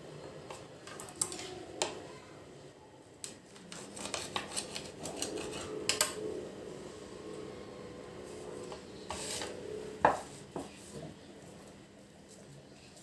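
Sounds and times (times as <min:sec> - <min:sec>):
utensils and dishes clicking: 0:00.5 - 0:02.0, 0:03.2 - 0:06.2.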